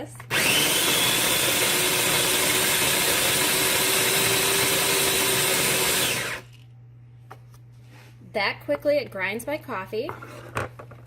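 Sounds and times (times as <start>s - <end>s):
electric coffee grinder grinding: 0.3s - 6.6s.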